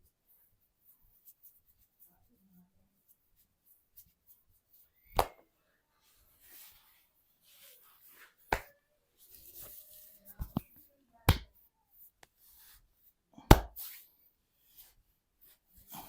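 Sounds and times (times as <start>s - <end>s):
hands rubbing skin and cloth: 0.0s - 5.1s, 6.0s - 16.0s
hands smacking skin: 5.1s - 5.4s, 8.4s - 8.8s, 10.4s - 11.6s, 13.4s - 14.0s.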